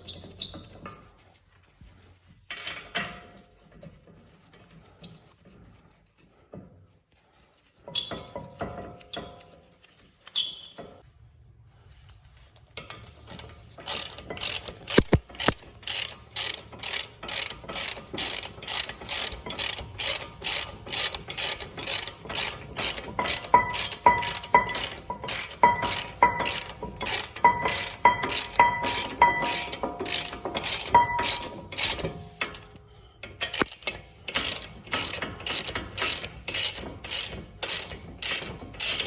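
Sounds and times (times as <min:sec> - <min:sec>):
metal scraping back and forth: 0:12.8 - 0:39.0
knocks and clinks: 0:22.9 - 0:31.8.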